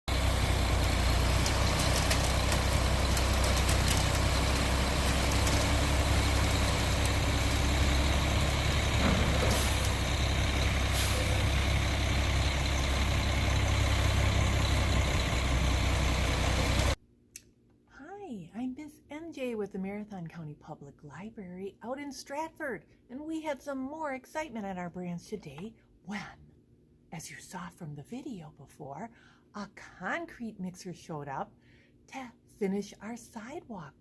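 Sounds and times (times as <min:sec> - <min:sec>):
diesel engine rumbling: 0:00.1 - 0:17.0.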